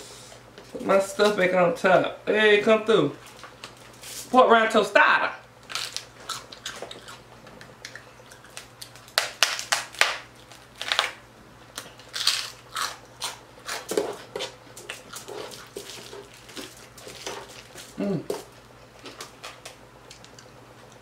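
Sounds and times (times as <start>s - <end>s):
crunching and chewing: 5.6s - 21.0s.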